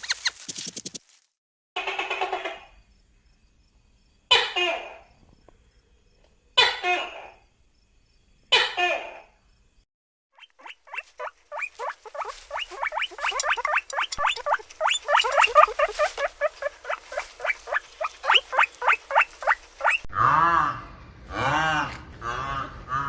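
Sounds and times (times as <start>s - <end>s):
small animal squeaking: 0.0s - 0.4s, 10.4s - 20.1s.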